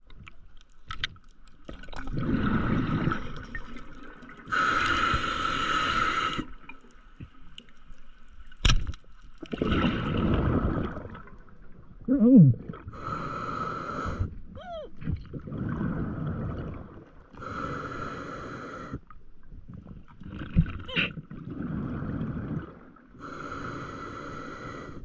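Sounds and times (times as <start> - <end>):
regulator exhaled bubbles gurgling: 1.7 - 6.8, 9.4 - 13.1, 15.0 - 17.5, 19.8 - 23.2
hissing regulator inhalation: 4.5 - 6.6, 17.4 - 19.0, 23.2 - 25.0.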